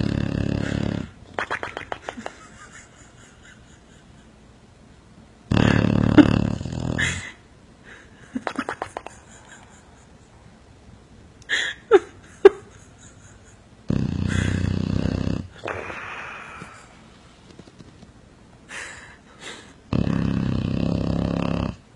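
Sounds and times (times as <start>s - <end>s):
dog snoring: 0.0s - 1.2s, 5.5s - 7.3s, 13.9s - 16.4s, 19.9s - 21.8s.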